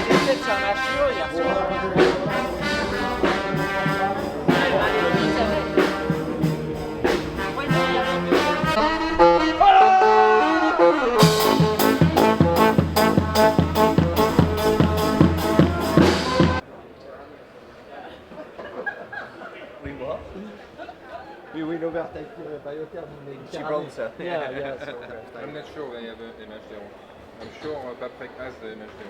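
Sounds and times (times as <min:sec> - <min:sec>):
steady drum beat: 0:00.0 - 0:08.8, 0:11.2 - 0:16.6
trumpets and trombones playing: 0:00.0 - 0:16.6.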